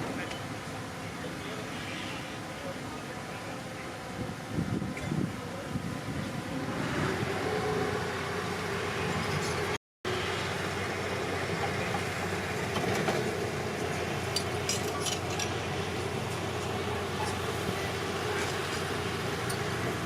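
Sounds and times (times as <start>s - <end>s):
bulldozer diesel engine running: 6.4s - 20.0s.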